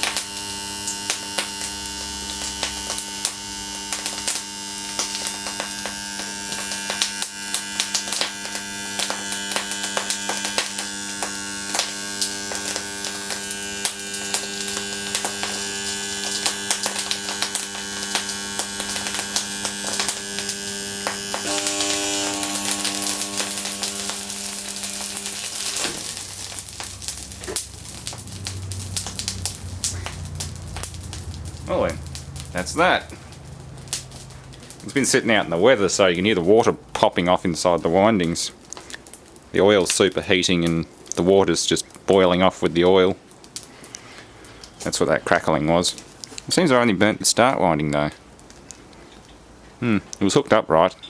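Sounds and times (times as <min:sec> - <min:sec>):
electric motor windings humming: 0:00.0 - 0:36.3
crackling and popping: 0:00.0 - 0:51.0.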